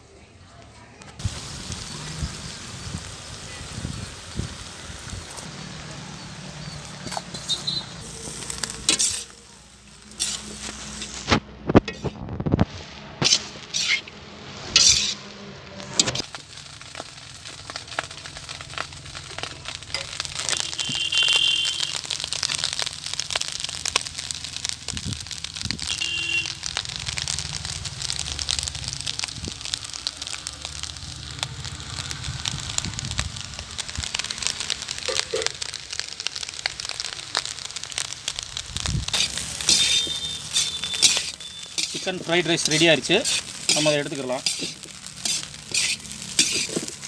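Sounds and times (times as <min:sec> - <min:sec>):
rice sizzling in a hot pan: 0:01.2 - 0:47.0
spatula clicking and scraping pan: 0:08.8 - 0:09.3, 0:10.1 - 0:11.1, 0:13.2 - 0:14.1, 0:14.8 - 0:15.2, 0:39.1 - 0:47.0.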